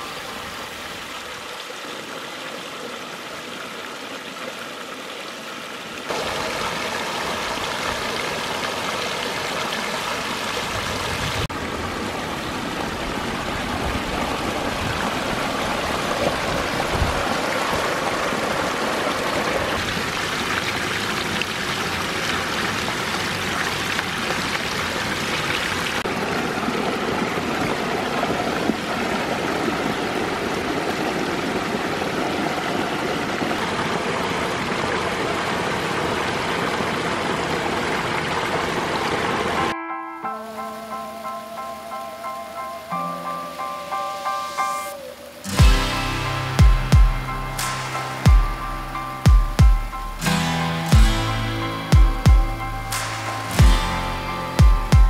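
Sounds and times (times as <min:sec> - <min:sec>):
water splashing over boulders: 0:00.0 - 0:39.8.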